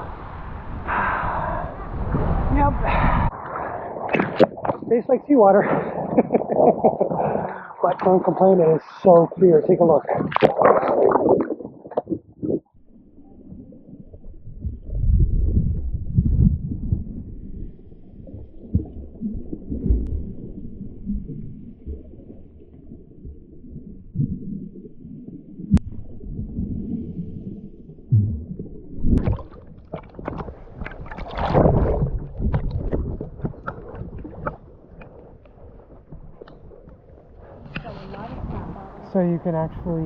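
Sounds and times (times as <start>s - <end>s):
sea water sloshing underwater: 0.0s - 40.0s
water splashing: 0.0s - 40.0s.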